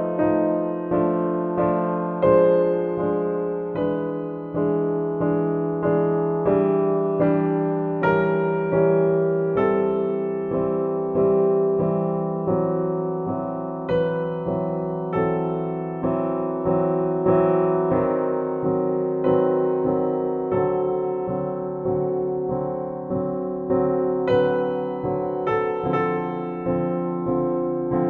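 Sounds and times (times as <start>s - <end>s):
slow piano chords: 0.0s - 28.0s.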